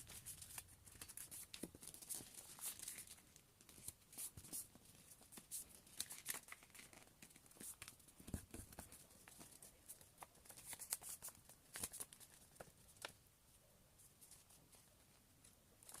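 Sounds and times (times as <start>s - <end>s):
paper rustling and creasing: 0.0s - 13.2s.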